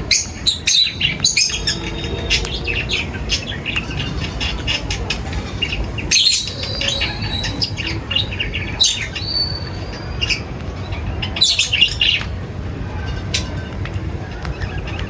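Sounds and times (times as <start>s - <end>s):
whistled bird notes: 0.0s - 12.3s
small birds chirping: 0.0s - 15.0s
steady low rumble: 0.0s - 15.0s.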